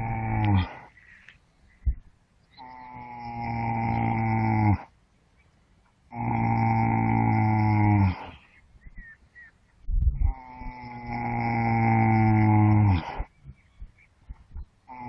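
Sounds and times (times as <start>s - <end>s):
horse snoring: 0.0s - 0.9s, 2.6s - 4.9s, 10.3s - 13.3s
low rumble: 9.8s - 10.8s, 13.2s - 14.8s.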